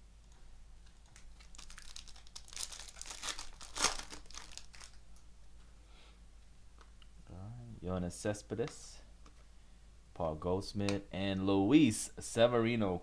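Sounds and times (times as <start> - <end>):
plastic packaging crinkling: 1.0 - 5.1.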